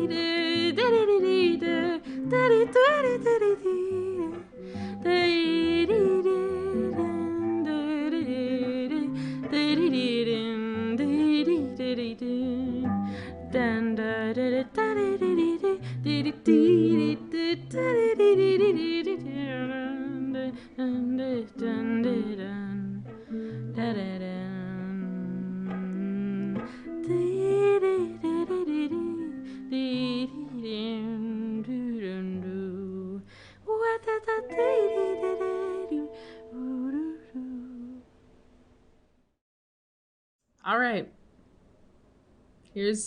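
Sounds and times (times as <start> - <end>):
plucked acoustic guitar: 0.0 - 30.8
person humming with vibrato: 34.5 - 38.0.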